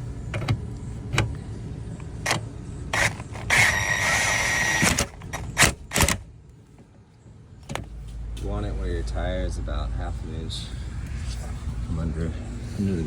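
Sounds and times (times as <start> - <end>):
cordless impact tool whining: 3.0 - 6.1.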